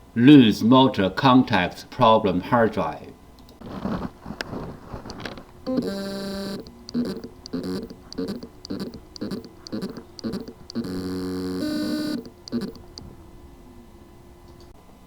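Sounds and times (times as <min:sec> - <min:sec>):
faint hum: 0:00.0 - 0:15.0
hard drive motor buzzing pulses: 0:05.1 - 0:13.2.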